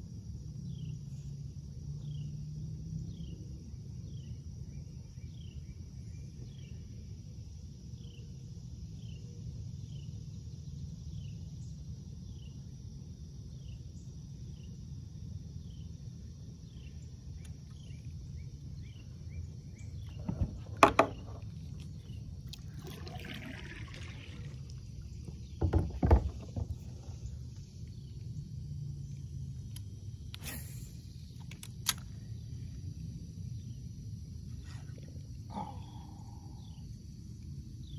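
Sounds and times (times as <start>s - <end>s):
faint insect hum: 0.0s - 37.9s
low rumble of wind or water: 0.0s - 37.9s
knocks of gear on kayak: 20.2s - 21.4s.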